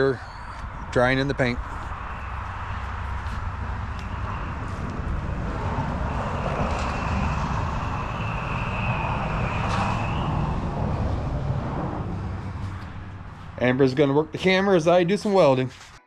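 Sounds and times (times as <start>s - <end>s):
distant engine passing: 0.0s - 15.6s.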